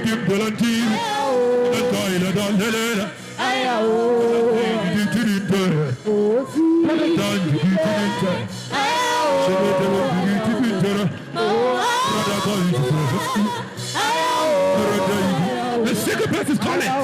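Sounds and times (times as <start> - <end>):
person singing ornamented phrases: 0.0 - 17.0.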